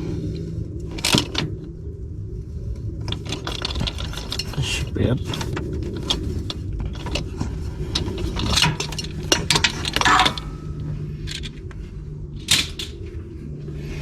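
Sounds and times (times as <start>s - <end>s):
metal hand tools clinking: 8.6s - 10.8s.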